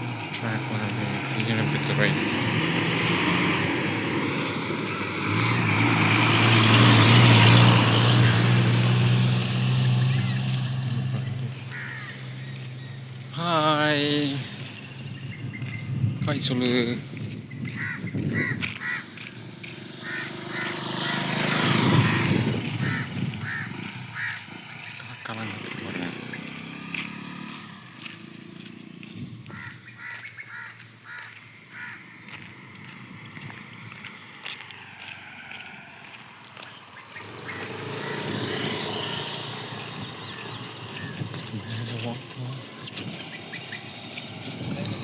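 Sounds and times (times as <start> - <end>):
vehicle passing: 0.0 - 45.0
crows cawing: 11.5 - 13.0, 17.6 - 25.1, 26.1 - 41.8.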